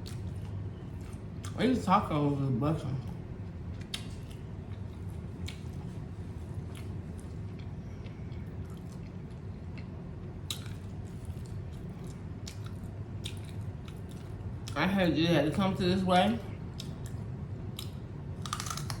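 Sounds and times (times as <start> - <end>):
close chewing mouth sounds: 0.0 - 1.6, 3.1 - 14.8
steady low hum: 0.0 - 19.0.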